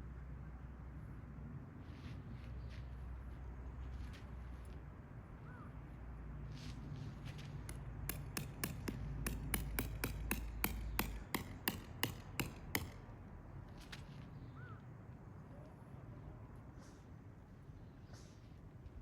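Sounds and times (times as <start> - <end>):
hammer striking tent peg: 7.6 - 13.0.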